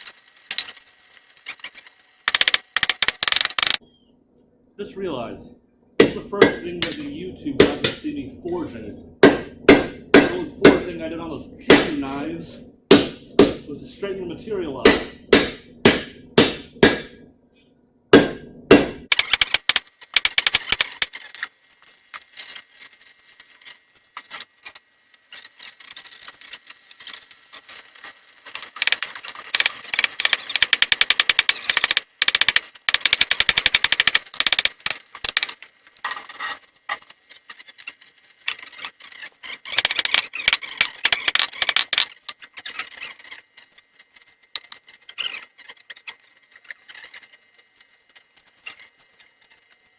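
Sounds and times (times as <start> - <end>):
hammer striking steel on anvil: 6.0 - 17.2, 18.2 - 19.6.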